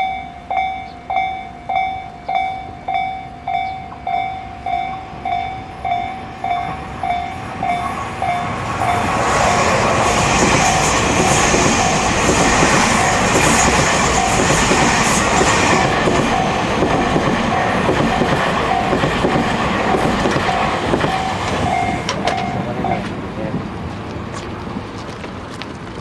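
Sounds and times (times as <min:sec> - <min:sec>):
level crossing bell ringing: 0:00.0 - 0:09.2, 0:16.2 - 0:19.2, 0:19.8 - 0:23.2
train wheels clattering: 0:00.8 - 0:26.0.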